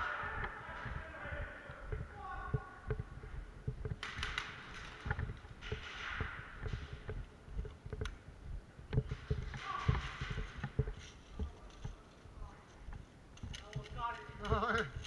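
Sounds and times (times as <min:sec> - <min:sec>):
low thumps and scraping: 0:00.0 - 0:15.0
sharp clicks: 0:12.9 - 0:15.0.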